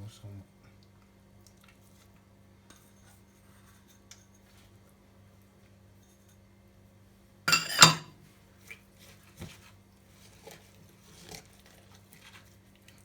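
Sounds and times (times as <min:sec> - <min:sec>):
dish clinking: 0:07.5 - 0:08.1.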